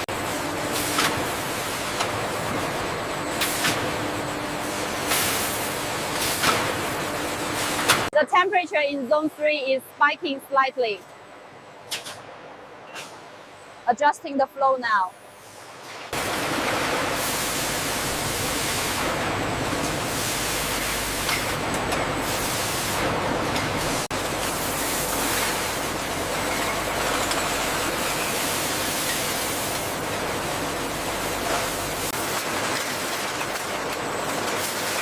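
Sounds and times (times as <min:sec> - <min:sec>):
factory machinery rumbling: 0:15.3 - 0:35.0.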